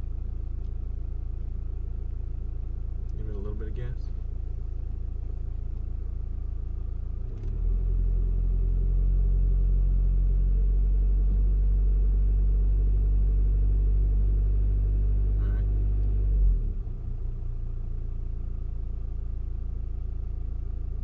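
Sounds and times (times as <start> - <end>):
diesel engine idling: 0.0 - 7.3.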